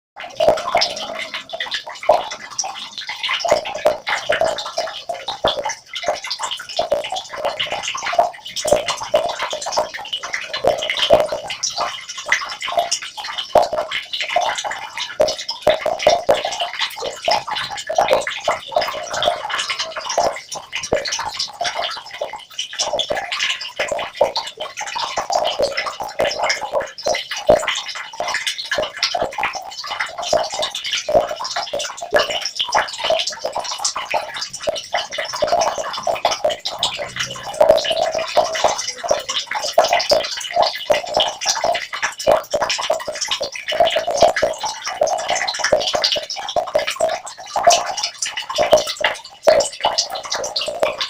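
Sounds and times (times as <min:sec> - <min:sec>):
water trickling and splashing: 0:00.2 - 0:51.0.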